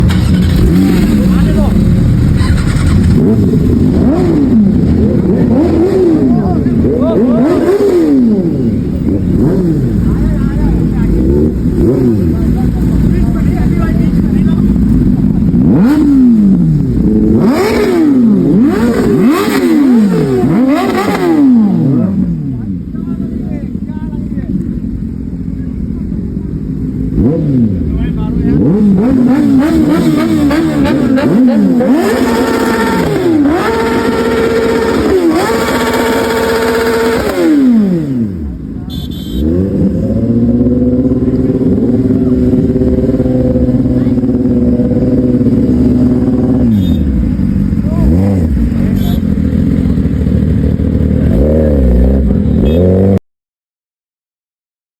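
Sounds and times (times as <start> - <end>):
engine revving: 0.0 - 22.7, 27.0 - 38.6, 39.2 - 53.2.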